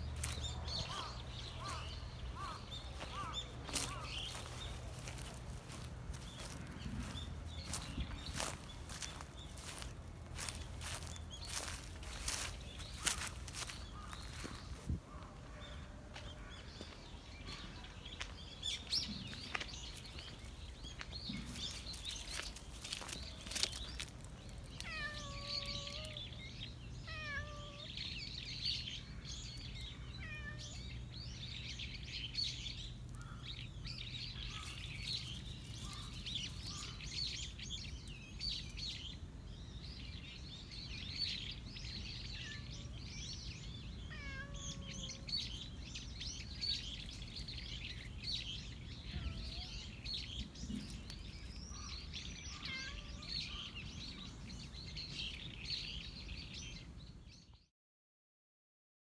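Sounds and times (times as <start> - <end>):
birds chirping: 0.0 - 57.5
cat meowing: 24.8 - 26.3, 27.0 - 28.0, 30.1 - 30.8, 44.0 - 45.4, 52.5 - 53.6.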